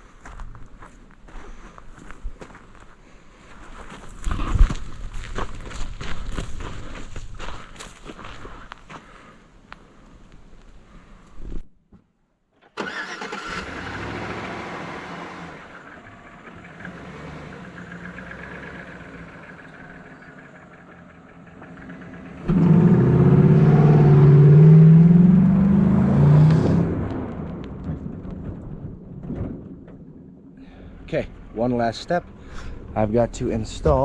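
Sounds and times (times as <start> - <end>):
pickup truck engine starting: 12.7 - 29.1
engine revving: 12.8 - 27.9.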